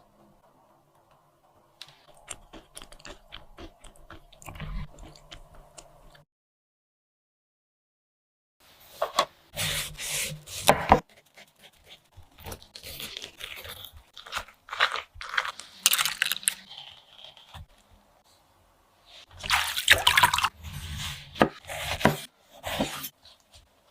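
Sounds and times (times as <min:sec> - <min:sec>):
knife cutting and scraping melon: 0:09.5 - 0:17.7, 0:20.4 - 0:23.9.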